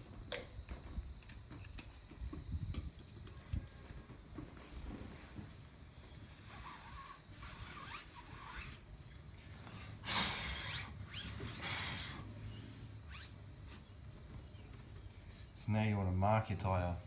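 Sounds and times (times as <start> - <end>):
cloth scrubbing rubber tyre: 6.4 - 8.9.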